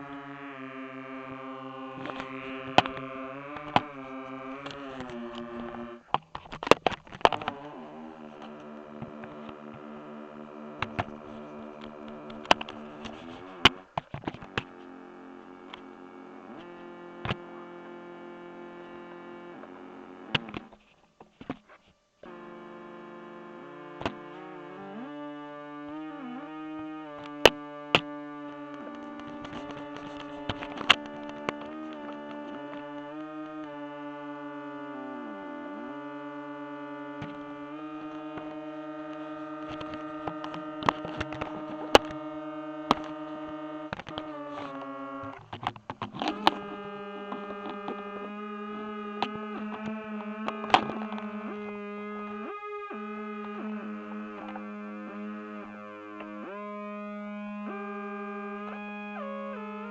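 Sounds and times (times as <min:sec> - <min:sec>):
electronic drone music: 0:00.0 - 0:06.1, 0:07.3 - 0:20.6, 0:22.2 - 0:45.4, 0:46.3 - 0:59.9
sharp clicks: 0:37.0 - 0:53.6.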